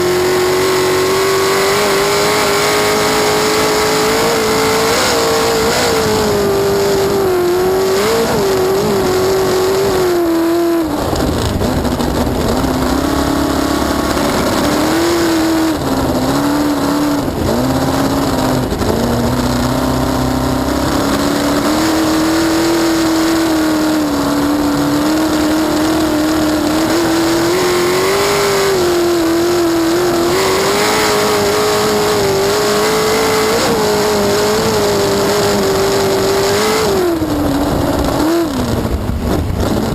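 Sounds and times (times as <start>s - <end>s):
boat engine running hard: 10.9s - 22.6s.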